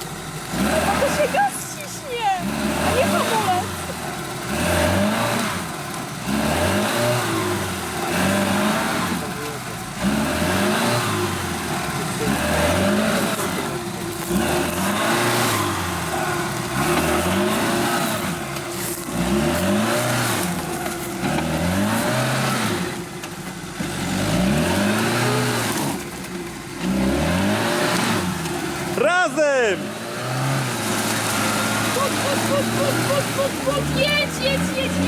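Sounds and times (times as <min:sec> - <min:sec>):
off-road vehicle engine revving: 0:00.0 - 0:35.0.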